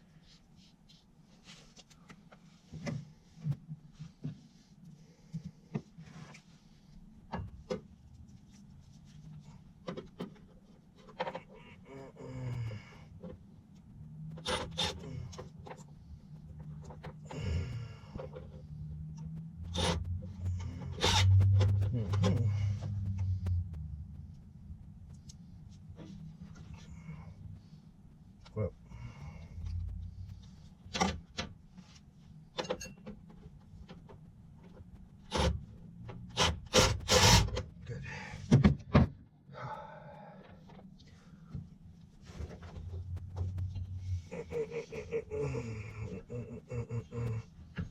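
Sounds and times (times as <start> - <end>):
soft rustle: 0.0 - 7.3, 7.9 - 9.8
low steady hum: 0.0 - 47.9
scrape: 0.1 - 7.0
hands and tools on sheet metal: 14.3 - 15.8, 19.1 - 23.6.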